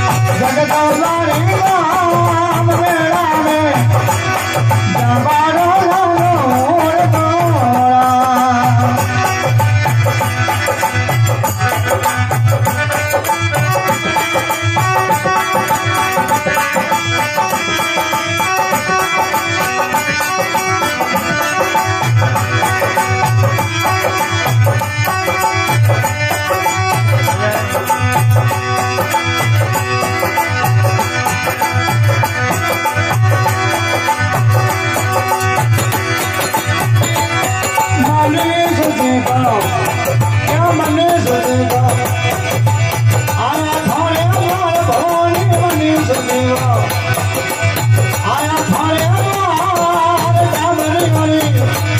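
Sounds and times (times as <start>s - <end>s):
person singing: 0.0s - 9.6s, 26.5s - 28.0s, 37.0s - 51.9s
hand drum beat: 0.0s - 51.9s.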